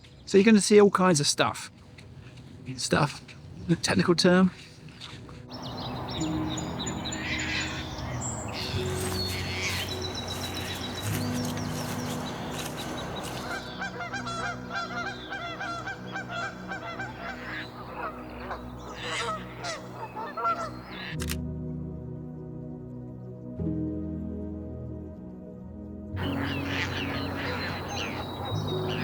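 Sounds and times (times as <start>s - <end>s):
soft background music: 0.0s - 29.0s
waterfowl honking: 5.5s - 21.2s, 26.2s - 29.0s.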